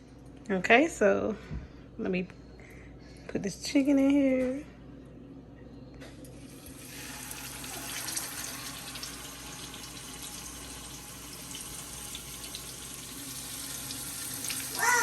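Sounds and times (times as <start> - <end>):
chicken sizzling in oil: 6.5 - 15.0.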